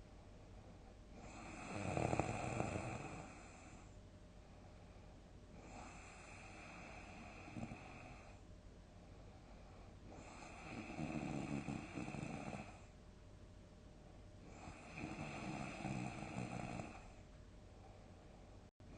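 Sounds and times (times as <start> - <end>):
person snoring heavily: 1.2 - 3.7, 5.6 - 8.4, 10.1 - 12.8, 14.5 - 17.2.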